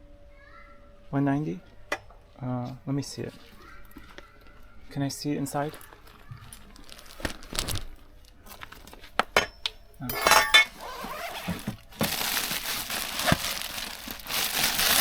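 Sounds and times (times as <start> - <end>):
backpack rustling: 5.6 - 9.2, 10.1 - 15.0
rustling scrape: 10.1 - 15.0.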